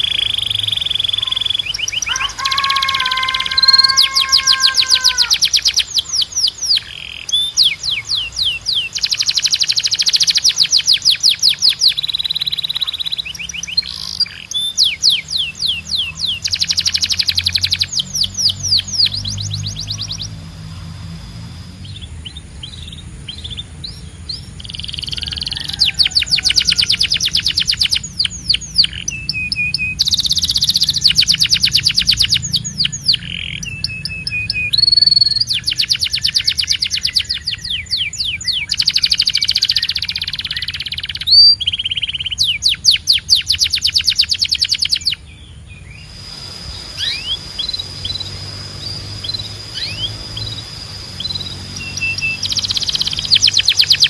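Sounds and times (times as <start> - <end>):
canary singing trills: 0.0 - 54.0.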